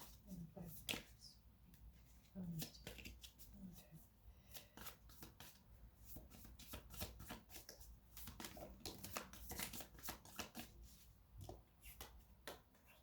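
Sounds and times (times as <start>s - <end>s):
cards being shuffled: 2.1s - 3.5s, 4.4s - 12.7s.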